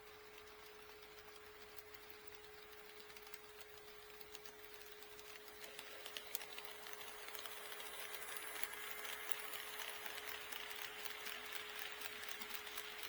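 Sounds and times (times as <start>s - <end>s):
model train rolling on track: 0.0s - 13.0s.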